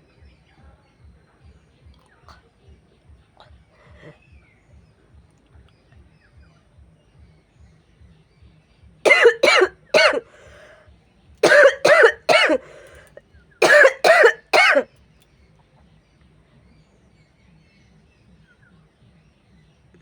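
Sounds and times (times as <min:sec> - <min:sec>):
woman coughing: 0:09.1 - 0:10.7, 0:11.4 - 0:14.8.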